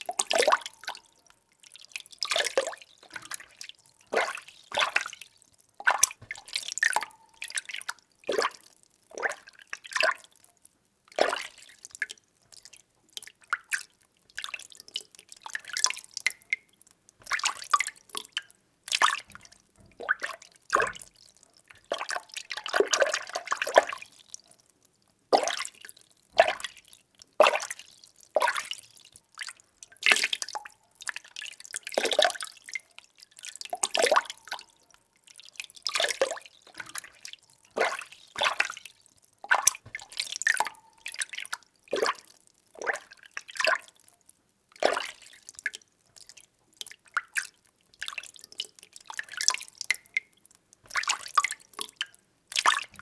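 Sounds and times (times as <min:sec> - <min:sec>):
water being stirred: 0:03.0 - 0:05.2, 0:36.0 - 0:41.4.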